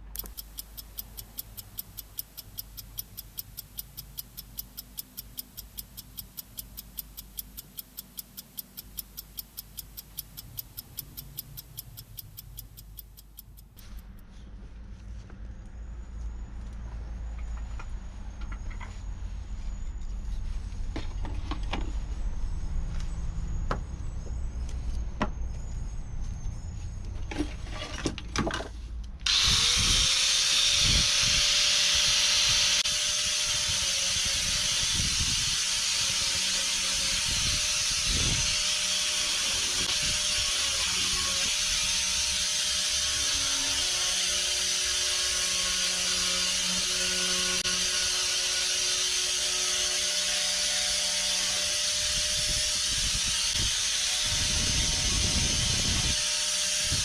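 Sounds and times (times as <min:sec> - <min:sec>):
electric saw motor whining: 0:29.2 - 0:57.0.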